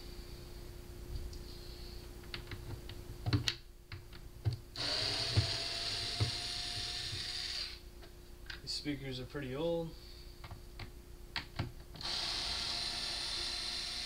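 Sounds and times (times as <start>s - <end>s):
cordless drill whining: 4.8s - 7.8s, 12.0s - 14.0s.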